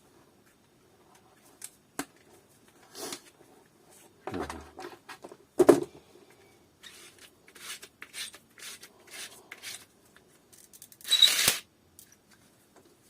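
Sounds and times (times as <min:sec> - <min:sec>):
knocks of parts put down: 0:04.2 - 0:05.9.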